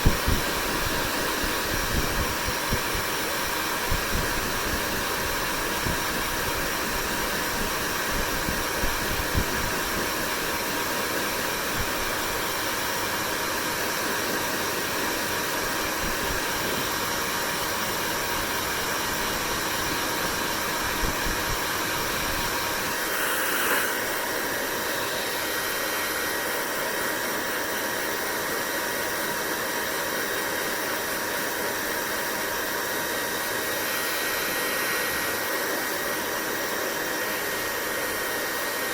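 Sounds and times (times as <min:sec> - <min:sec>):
hair dryer blowing air: 0:00.0 - 0:38.9.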